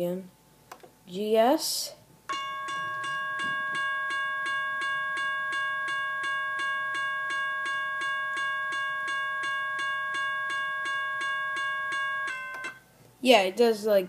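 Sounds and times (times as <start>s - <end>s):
electronic railroad crossing bell: 2.3s - 12.8s.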